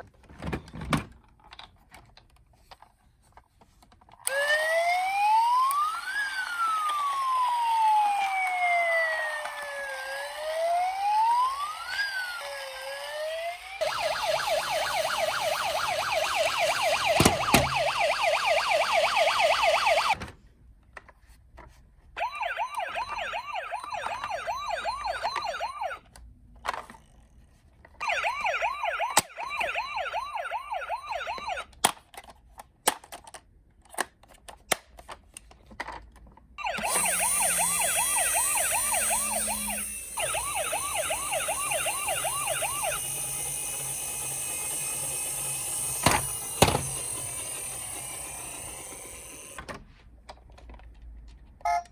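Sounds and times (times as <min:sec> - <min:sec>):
toy electronic sirens warbling: 0:04.2 - 0:20.2, 0:22.2 - 0:26.1, 0:28.0 - 0:31.8, 0:36.6 - 0:49.6.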